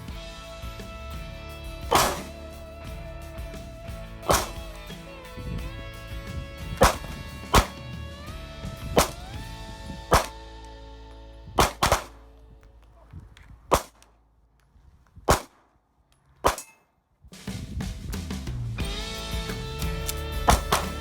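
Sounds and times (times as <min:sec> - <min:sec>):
background music: 0:00.0 - 0:12.6, 0:18.2 - 0:21.0
sharp gunshots: 0:01.9 - 0:02.6, 0:04.2 - 0:05.0, 0:06.3 - 0:08.0, 0:08.9 - 0:10.5, 0:11.6 - 0:12.4, 0:13.7 - 0:14.1, 0:15.3 - 0:15.7, 0:16.4 - 0:16.8, 0:20.5 - 0:21.0.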